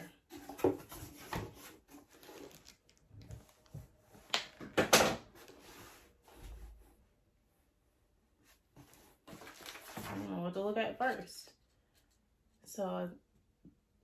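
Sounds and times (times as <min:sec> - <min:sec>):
rustling scrapes: 0:00.3 - 0:04.2, 0:05.4 - 0:06.9
paper rustling: 0:00.5 - 0:04.3, 0:08.8 - 0:10.4.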